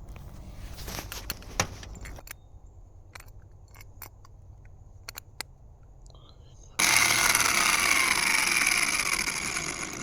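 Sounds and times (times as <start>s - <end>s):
handling rustling: 0.0s - 2.3s.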